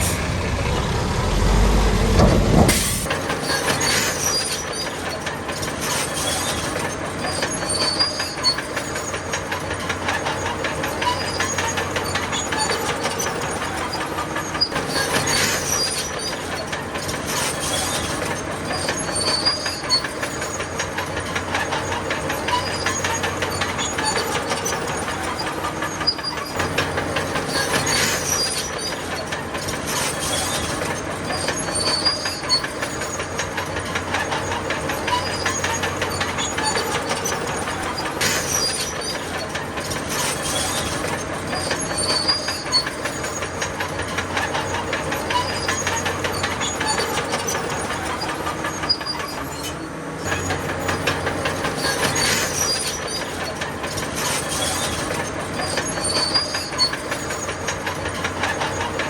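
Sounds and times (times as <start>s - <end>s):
diesel engine running: 0.0s - 4.3s, 16.6s - 59.0s
steel tracks clattering and squealing: 0.0s - 59.0s.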